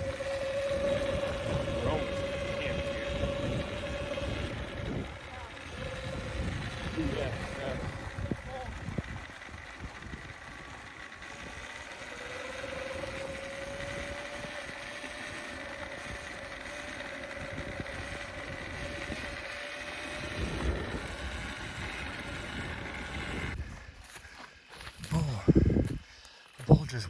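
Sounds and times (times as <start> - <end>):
wind rumbling on microphone: 0.0 - 11.7, 17.4 - 24.0, 25.0 - 26.1
small vehicle engine running: 0.0 - 25.3.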